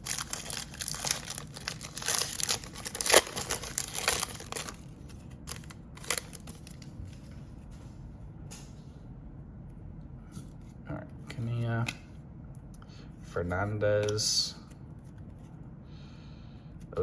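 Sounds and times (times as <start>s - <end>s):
wrapper ripping: 0.0s - 4.8s, 5.5s - 6.9s
cellophane wrapper crinkling: 0.0s - 6.9s.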